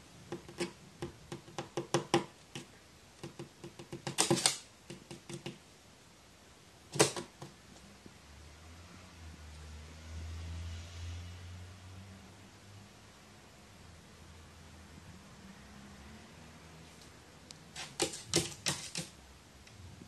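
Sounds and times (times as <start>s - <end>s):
taps and clicks on hard surface: 0.3s - 5.6s, 18.0s - 19.1s.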